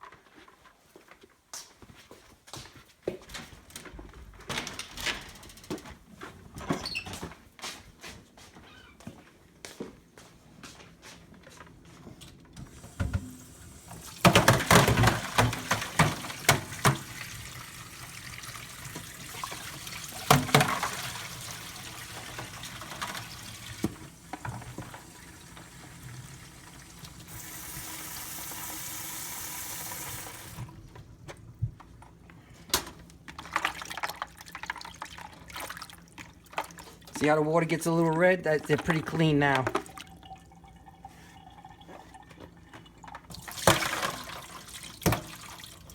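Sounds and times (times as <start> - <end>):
tap running: 12.6 - 32.1, 41.8 - 45.7
water splashing and sloshing: 13.0 - 27.6, 30.1 - 45.9.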